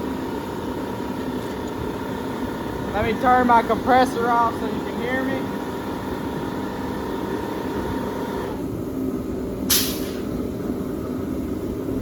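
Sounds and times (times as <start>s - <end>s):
air compressor running: 0.0s - 11.9s
steady low hum: 0.0s - 12.0s
short sharp air hiss: 9.7s - 10.3s.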